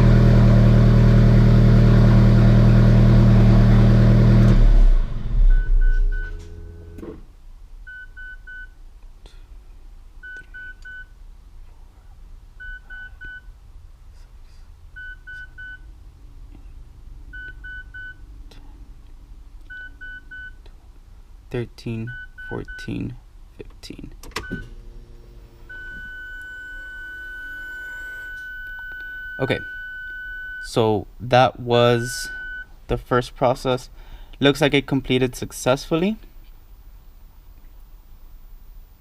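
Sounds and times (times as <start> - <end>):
car engine running: 0.0 - 7.2
triple electronic beep: 5.4 - 6.4.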